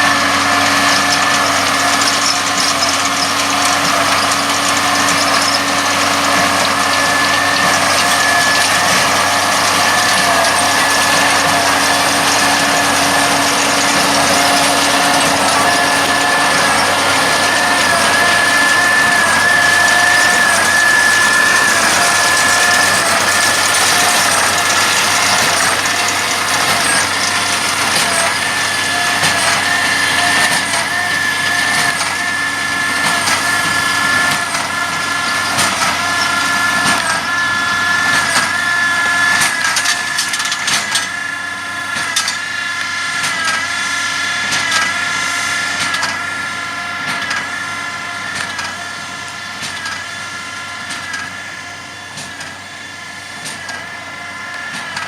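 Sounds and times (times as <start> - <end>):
tractor and baler whine: 0.0 - 55.0.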